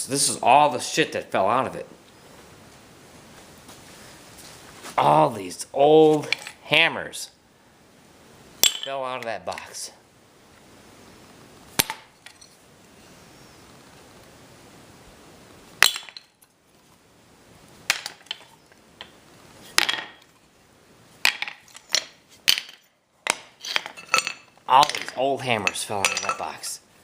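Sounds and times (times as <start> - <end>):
metal hand tools clanking: 21.3 - 26.6.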